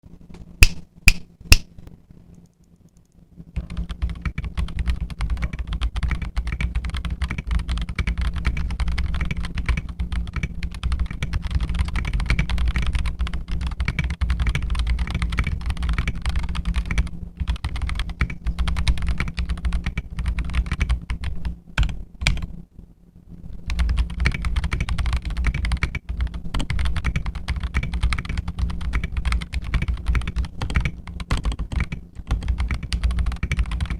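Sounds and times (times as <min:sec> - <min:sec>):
sharp loud clicks: 0:00.6 - 0:01.7
typing on mechanical keyboard: 0:03.0 - 0:22.5, 0:23.7 - 0:33.9.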